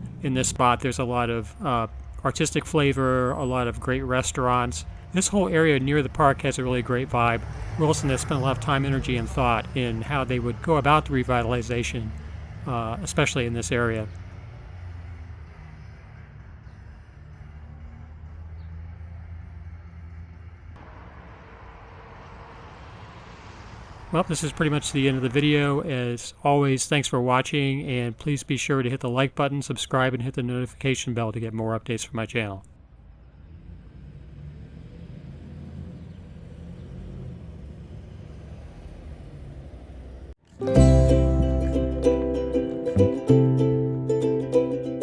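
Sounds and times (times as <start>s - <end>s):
street traffic rumble: 0.0s - 45.0s
plucked-string music: 40.5s - 45.0s.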